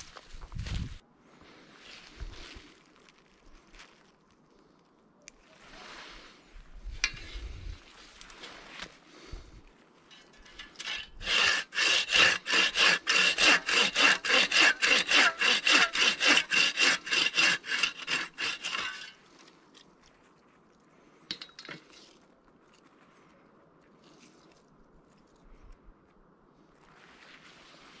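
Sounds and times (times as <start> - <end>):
hand saw cutting wood: 10.4 - 19.2.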